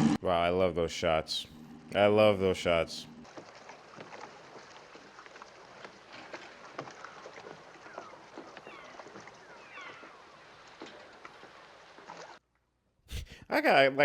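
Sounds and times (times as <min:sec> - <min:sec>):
gull cries: 0:07.0 - 0:10.3.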